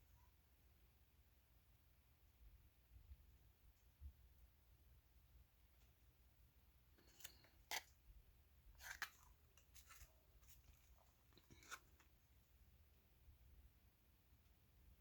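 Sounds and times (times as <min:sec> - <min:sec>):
plastic packaging crinkling: 0:08.8 - 0:12.1.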